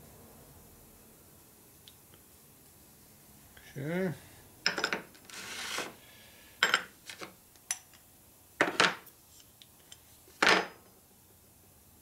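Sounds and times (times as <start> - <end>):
scrape on workbench: 5.2 - 6.0.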